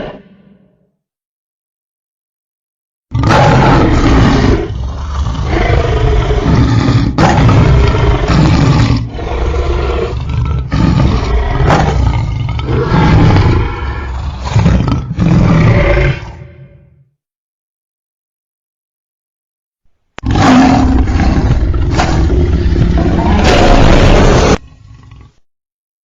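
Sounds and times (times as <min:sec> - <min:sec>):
deep growling dinosaur roars: 0:03.1 - 0:17.0, 0:20.2 - 0:25.4.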